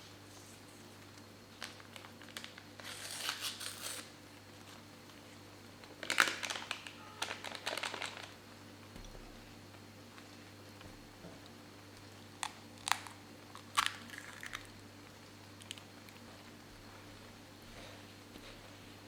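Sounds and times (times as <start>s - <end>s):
crinkly material crackling: 0.3s - 4.8s, 5.8s - 8.5s.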